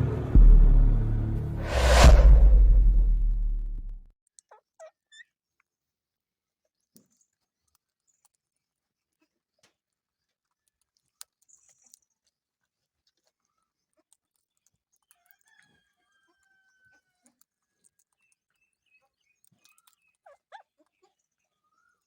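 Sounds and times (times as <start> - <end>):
parrot chirps: 18.2 - 22.0.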